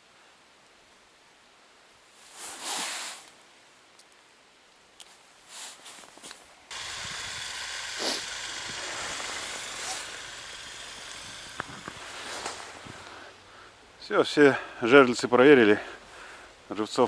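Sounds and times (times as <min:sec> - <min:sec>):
steady rushing hiss: 0:00.0 - 0:17.0.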